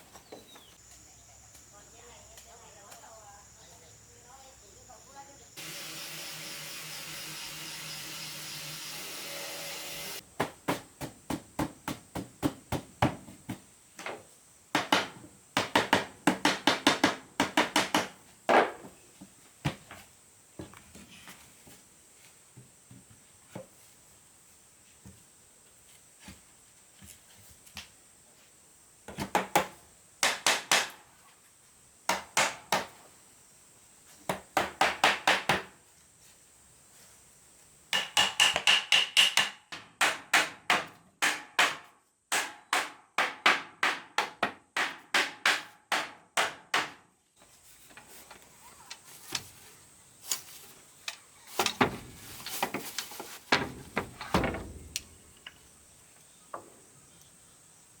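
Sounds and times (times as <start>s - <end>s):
hammer striking wood: 14.8s - 18.7s, 37.9s - 47.0s.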